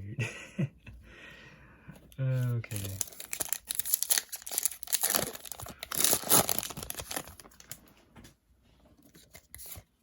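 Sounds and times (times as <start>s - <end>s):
foil wrapper crinkling and tearing: 2.4s - 7.8s.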